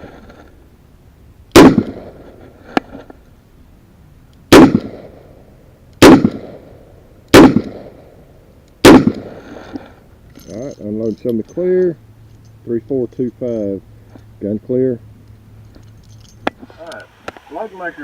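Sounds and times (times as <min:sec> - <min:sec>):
loud revolver shots: 0:01.5 - 0:02.3, 0:04.5 - 0:08.2, 0:08.8 - 0:09.5.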